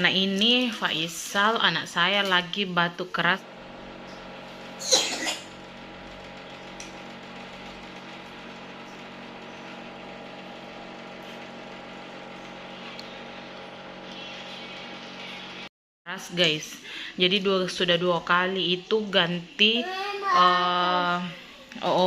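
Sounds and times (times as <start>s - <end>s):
small motor humming: 3.4s - 15.7s.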